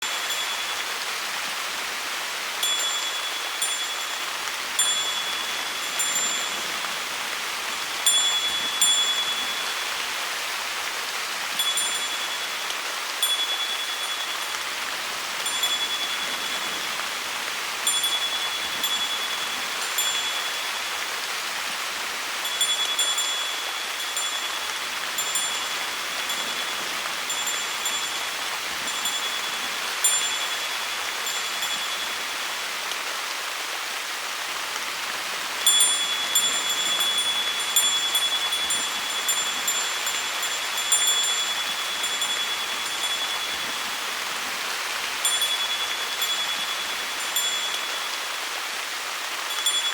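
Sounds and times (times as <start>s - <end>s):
wind bell ringing: 0.0s - 0.9s, 2.6s - 7.0s, 7.7s - 10.0s, 11.5s - 12.6s, 13.2s - 14.8s, 15.4s - 17.0s, 17.8s - 21.0s, 22.4s - 32.3s, 35.6s - 44.0s, 45.2s - 48.3s, 49.5s - 49.9s
falling rain hiss: 0.0s - 49.9s.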